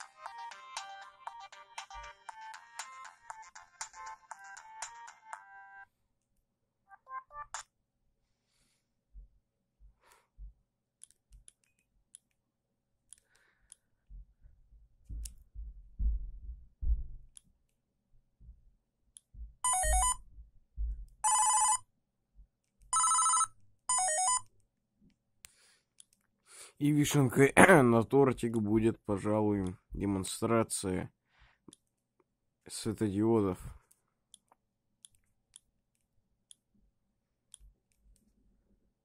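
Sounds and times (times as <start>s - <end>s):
low thumps: 15.0s - 17.3s, 19.3s - 21.2s
phone ringtone melody: 19.6s - 20.2s, 21.2s - 21.9s, 22.9s - 24.5s.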